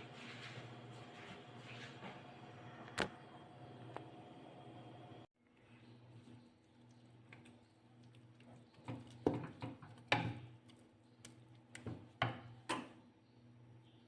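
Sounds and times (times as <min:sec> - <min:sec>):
steady low hum: 0:00.0 - 0:08.2.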